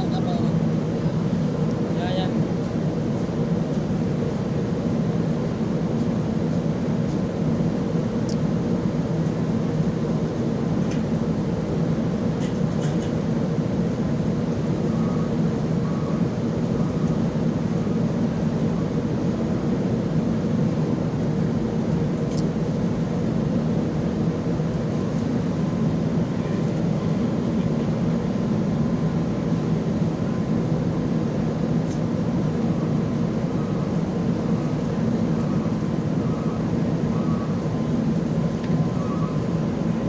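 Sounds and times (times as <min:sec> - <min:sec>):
ship engines humming: 0:00.0 - 0:04.8, 0:22.9 - 0:40.0.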